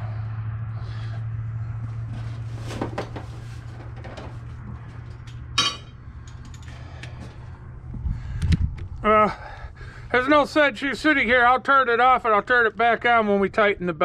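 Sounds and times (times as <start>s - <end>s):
steady low hum: 0.0s - 13.9s
metal tools clinking on engine parts: 5.0s - 6.9s.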